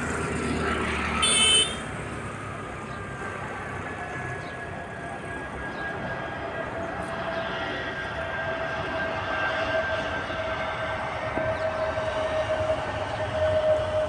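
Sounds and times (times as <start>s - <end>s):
jet engines rumbling and whining: 0.0s - 14.0s.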